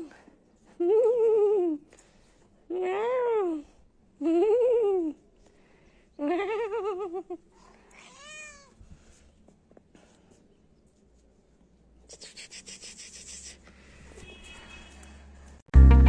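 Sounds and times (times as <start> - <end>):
cat meowing: 7.9 - 8.8.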